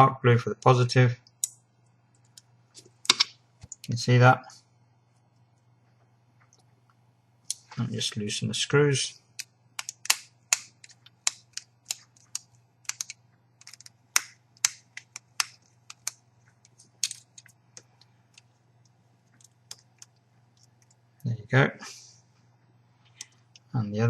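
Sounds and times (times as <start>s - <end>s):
small parts clicking: 9.4s - 21.0s.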